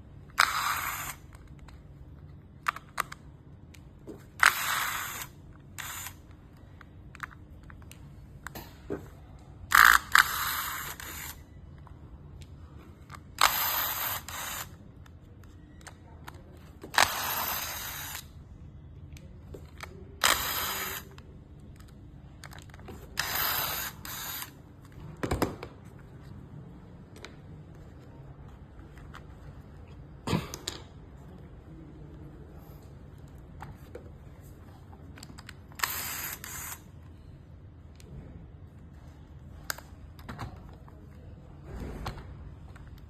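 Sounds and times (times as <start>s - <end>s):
small mechanism whirring: 4.4s - 6.3s, 9.7s - 11.5s, 13.3s - 14.8s, 16.9s - 18.4s, 20.2s - 21.2s, 23.1s - 24.6s, 35.8s - 36.9s.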